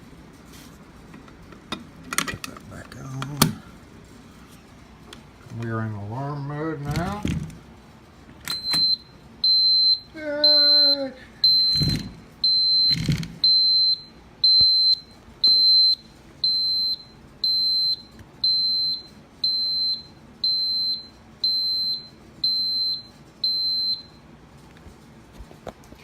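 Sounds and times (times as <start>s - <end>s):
high-pitched alarm beeps: 8.5s - 24.2s.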